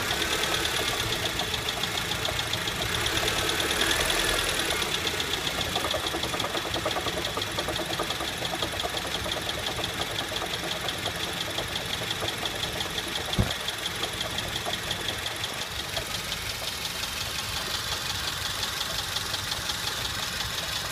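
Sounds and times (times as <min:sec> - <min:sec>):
car engine knocking tick: 0:00.0 - 0:20.9
short thump: 0:13.4 - 0:13.6.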